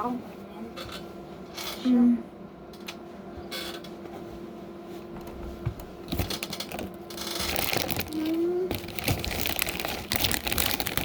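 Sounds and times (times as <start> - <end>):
plastic pieces clicking and rattling: 6.1 - 11.0
rustling: 6.7 - 11.0.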